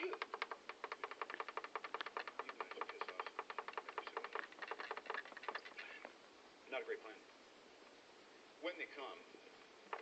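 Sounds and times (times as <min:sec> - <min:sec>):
rapid sharp clicking: 0:00.0 - 0:05.9.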